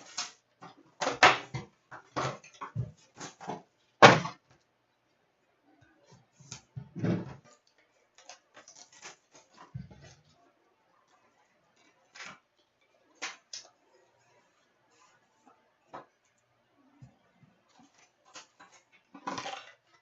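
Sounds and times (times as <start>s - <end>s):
cardboard and wrapper rustling: 8.2s - 10.4s.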